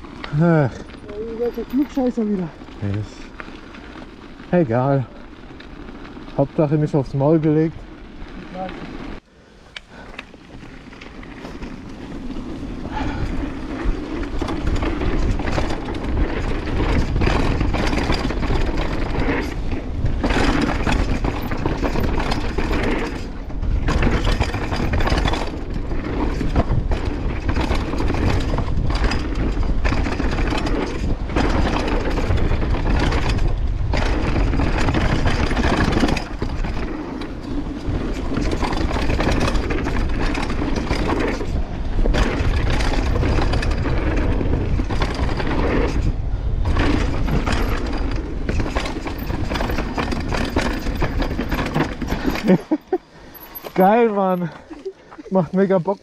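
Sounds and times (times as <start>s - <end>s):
bike chain clattering: 0.0s - 9.2s, 9.9s - 56.0s
bike rattling: 0.0s - 56.0s
tyres rolling over dirt: 0.0s - 56.0s
wind rushing over microphone: 9.9s - 53.8s.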